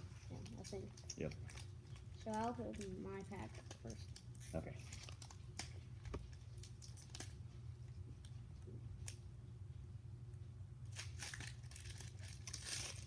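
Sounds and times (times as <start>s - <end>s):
steady low hum: 0.0s - 13.0s
foil wrapper crinkling and tearing: 0.4s - 7.4s, 10.9s - 13.0s.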